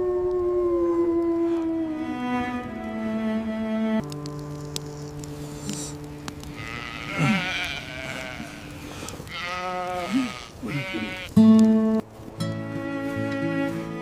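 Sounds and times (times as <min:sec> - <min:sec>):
bowed string music: 0:01.2 - 0:08.9, 0:10.8 - 0:14.0
sheep bleating: 0:06.5 - 0:11.9.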